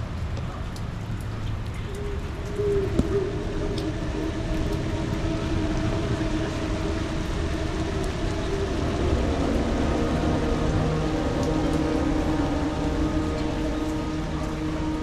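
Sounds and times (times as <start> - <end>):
rain: 0.0 - 15.0
wind: 0.0 - 15.0.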